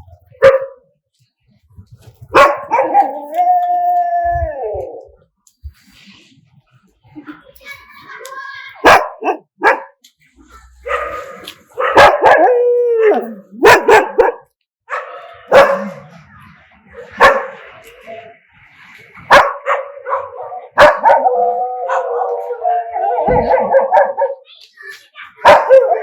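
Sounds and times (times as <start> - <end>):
dogs barking: 0.4 - 0.8, 2.3 - 3.4, 8.8 - 10.0, 10.6 - 16.1, 16.9 - 17.8, 19.2 - 24.5, 25.2 - 26.0
dog howling: 2.6 - 5.2, 10.9 - 14.4, 19.4 - 24.4, 25.5 - 26.0.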